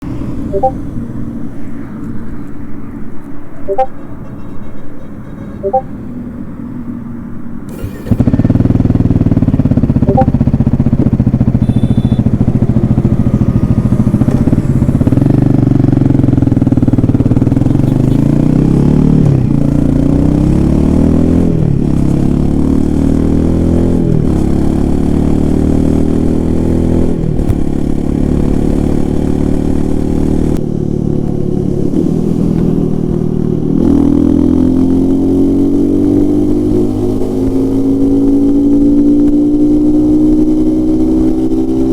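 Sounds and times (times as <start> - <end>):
motorcycle engine accelerating: 0.0 - 0.7, 7.7 - 41.9.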